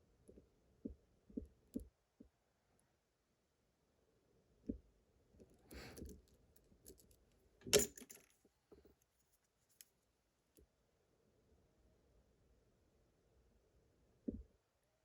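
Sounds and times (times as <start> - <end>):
lock picks clicking in lock: 6.9 - 8.3.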